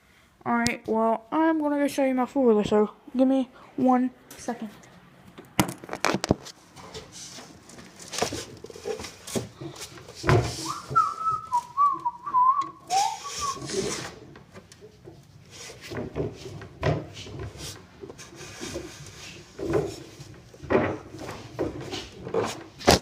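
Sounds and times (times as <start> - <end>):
person whistling a tune: 10.6 - 13.8.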